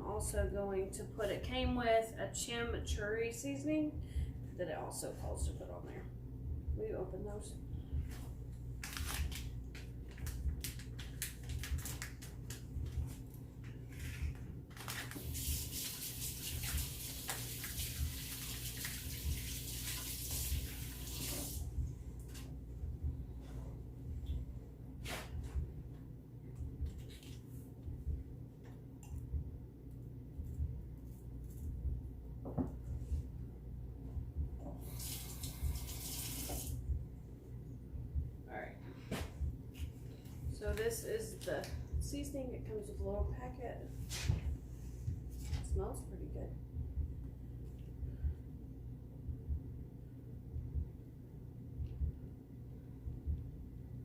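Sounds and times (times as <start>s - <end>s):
kitchen tap running: 15.1s - 21.6s, 34.8s - 36.8s.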